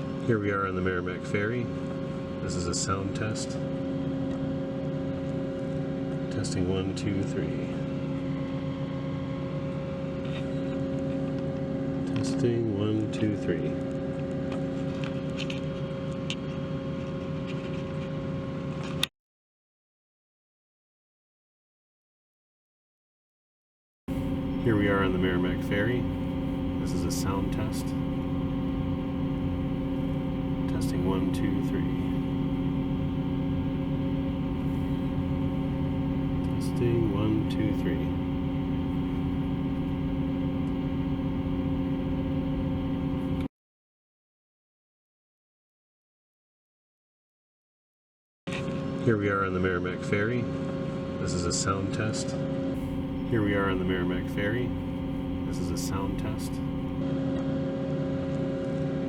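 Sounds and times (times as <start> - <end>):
ferry machinery hum and rumble: 24.1 - 43.5, 52.8 - 57.0.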